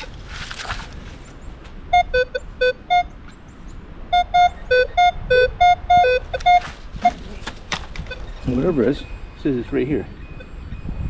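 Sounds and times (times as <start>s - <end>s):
metal detector beeps: 1.9s - 3.2s, 4.1s - 7.3s, 8.0s - 11.0s.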